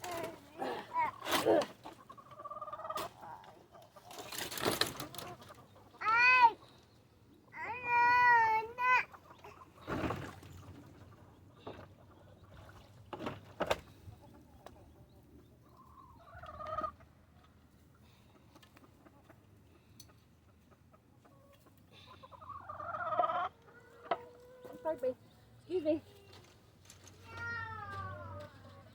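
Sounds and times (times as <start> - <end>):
hens clucking: 0.0 - 7.6, 8.5 - 13.0, 14.1 - 25.4.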